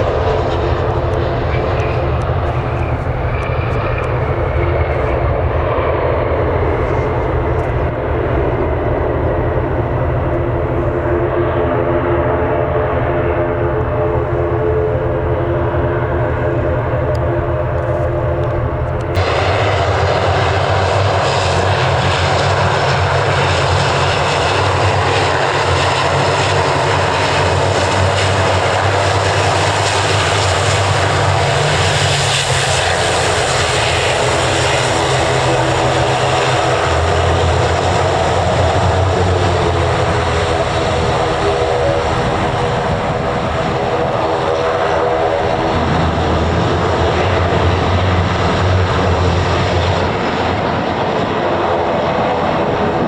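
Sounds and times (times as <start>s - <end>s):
aircraft engines running: 0.0s - 53.0s.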